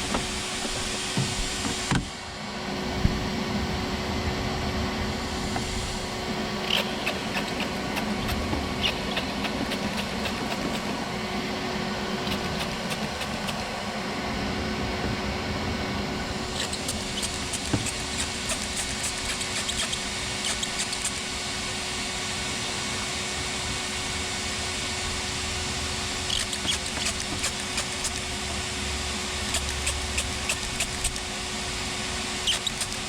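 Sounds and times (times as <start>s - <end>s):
shop vac blowing: 0.0s - 33.0s.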